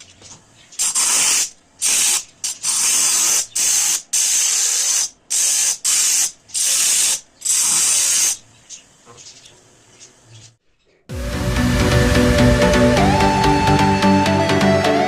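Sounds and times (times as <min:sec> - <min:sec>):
short bursts of hissing: 0:00.7 - 0:08.4.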